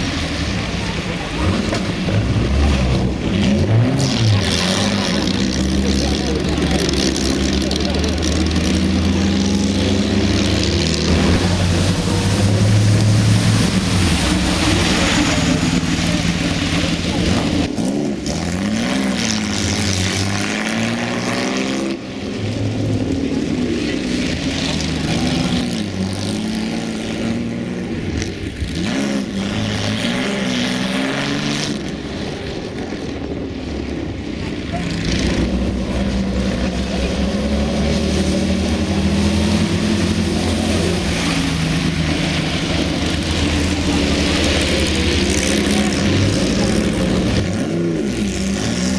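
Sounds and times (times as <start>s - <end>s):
car engine running: 0.0s - 20.5s, 31.9s - 48.9s
wet road spray hiss: 11.0s - 17.6s
racing car engine running: 31.9s - 48.9s.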